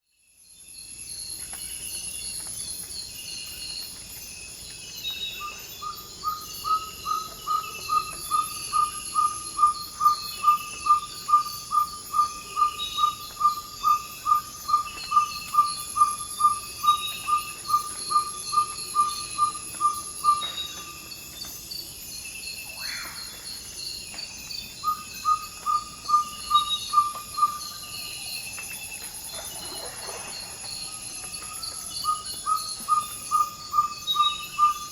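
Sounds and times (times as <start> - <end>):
high-pitched insect chorus: 0.2 - 34.9
owl whistling call: 24.8 - 27.7, 32.0 - 34.9.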